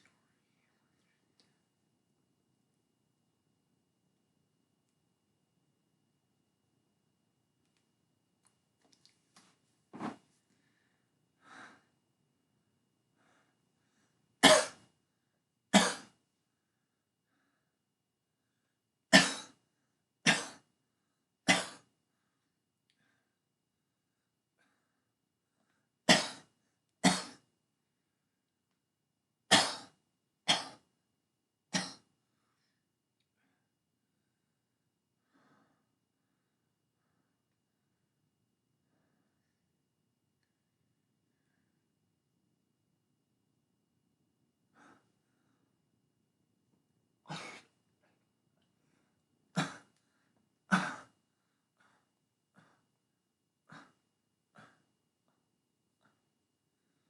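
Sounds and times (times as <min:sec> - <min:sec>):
person coughing: 0:14.4 - 0:14.8, 0:15.8 - 0:16.2, 0:19.1 - 0:19.6, 0:20.2 - 0:20.6, 0:21.5 - 0:21.9, 0:26.1 - 0:27.4, 0:29.5 - 0:30.8, 0:31.8 - 0:32.1, 0:47.3 - 0:47.7, 0:49.5 - 0:49.9, 0:50.7 - 0:51.1.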